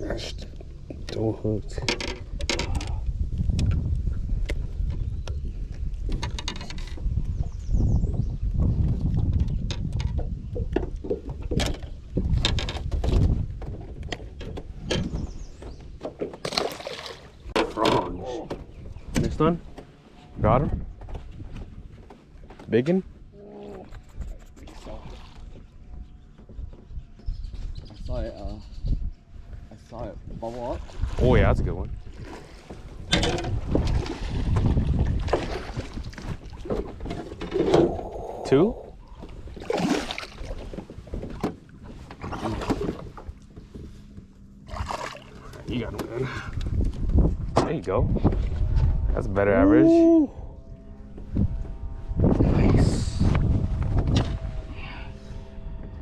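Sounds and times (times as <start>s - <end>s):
wind buffeting microphone: 0.0s - 16.1s, 17.4s - 22.4s, 23.0s - 56.0s
steady low rumble: 41.3s - 56.0s.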